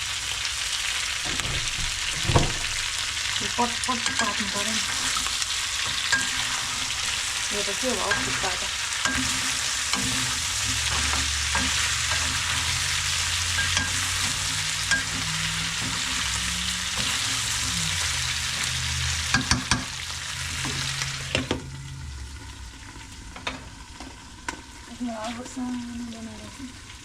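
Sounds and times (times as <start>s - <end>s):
chicken sizzling in a pan: 0.0s - 27.0s
lawn mower humming: 3.4s - 22.3s
spatula knocking on pan: 13.5s - 16.2s, 19.3s - 20.0s.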